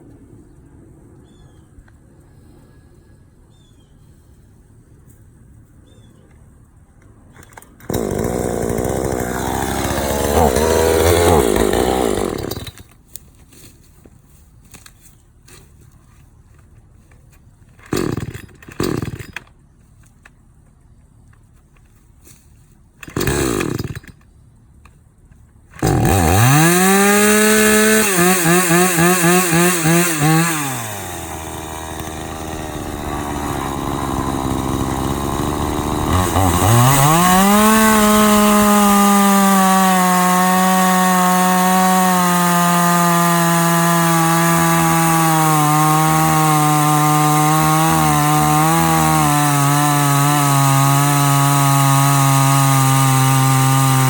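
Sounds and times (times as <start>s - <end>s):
chainsaw revving and idling: 7.9s - 12.9s, 17.8s - 19.4s, 23.0s - 24.1s, 25.8s - 54.0s.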